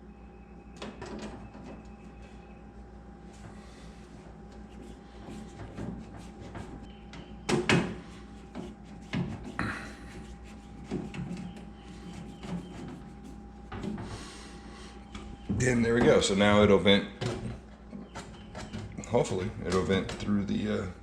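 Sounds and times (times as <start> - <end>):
faint hum: 0.0 - 21.0
parts knocking and clunking: 15.1 - 20.8.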